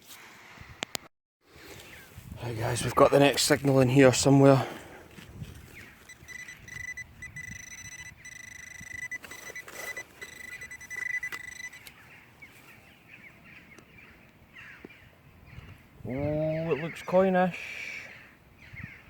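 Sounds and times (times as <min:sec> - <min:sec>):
faint clicks and rustles: 0:05.1 - 0:12.0
metal detector high-pitched tone: 0:06.1 - 0:11.9.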